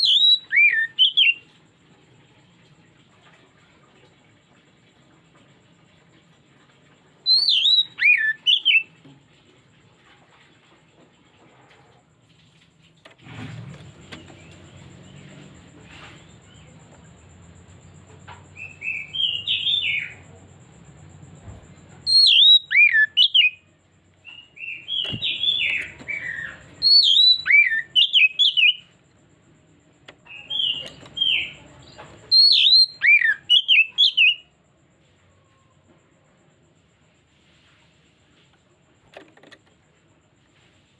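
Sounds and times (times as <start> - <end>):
bird singing whistled phrases: 0.0 - 1.4, 7.3 - 8.9, 18.6 - 20.2, 22.1 - 23.6, 24.3 - 28.9, 32.3 - 34.5.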